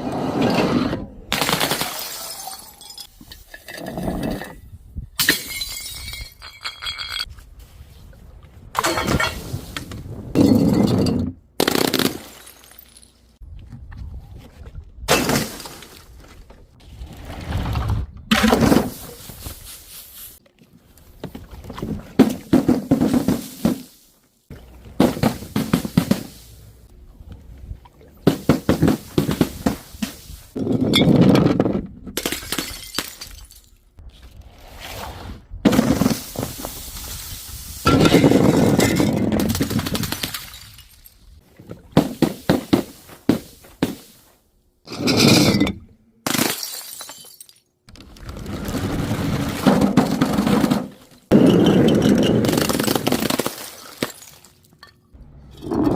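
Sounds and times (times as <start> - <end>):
glass breaking and crunching: 32.2 - 33.8, 45.6 - 47.7, 51.8 - 55.0.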